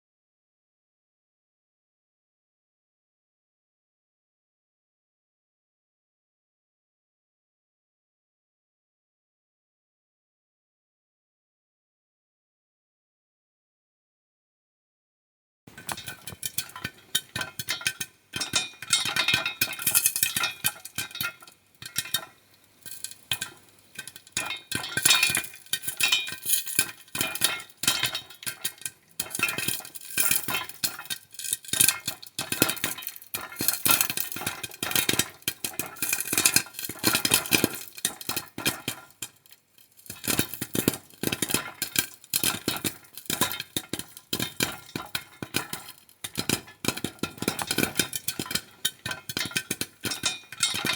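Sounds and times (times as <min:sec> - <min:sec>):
popcorn popping in a pan: 0:15.7 - 0:50.9.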